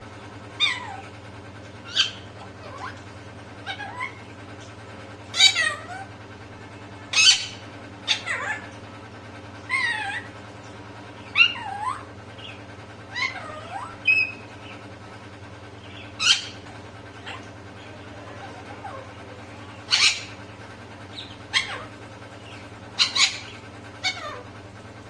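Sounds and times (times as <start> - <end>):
parrot meow-like calls: 0.5 - 1.2, 1.8 - 4.4, 5.3 - 6.2, 7.0 - 9.0, 9.6 - 10.4, 11.2 - 14.8, 15.9 - 24.6.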